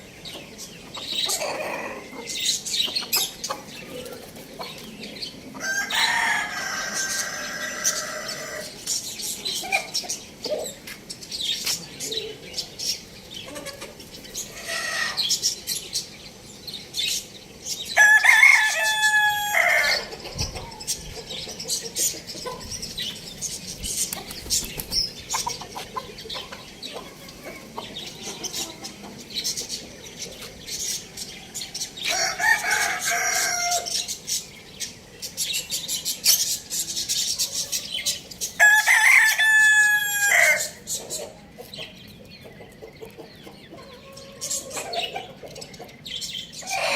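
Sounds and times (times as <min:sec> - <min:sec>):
chickens clucking: 0:00.0 - 0:46.9
rooster crowing: 0:05.6 - 0:08.7, 0:18.0 - 0:20.1, 0:32.1 - 0:33.9, 0:38.6 - 0:40.8.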